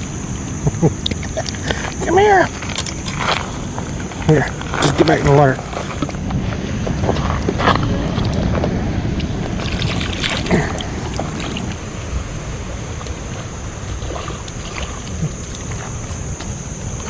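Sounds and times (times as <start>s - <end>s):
stream water rushing: 0.0s - 17.0s
wind buffeting microphone: 0.0s - 17.0s
knocks or splashes: 9.4s - 11.8s.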